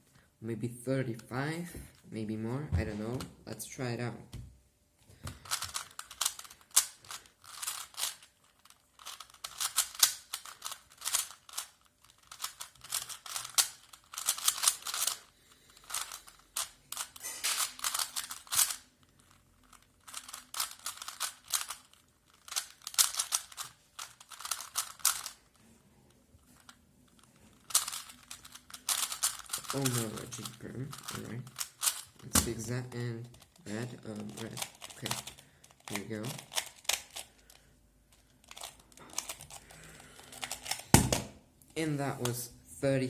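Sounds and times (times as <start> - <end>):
puzzle cube clicking: 5.3 - 25.6, 26.6 - 41.3.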